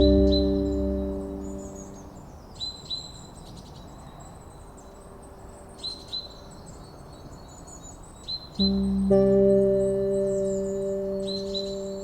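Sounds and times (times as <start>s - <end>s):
bird chirps: 0.0s - 2.2s, 8.6s - 12.0s
high bird twittering: 8.6s - 12.0s.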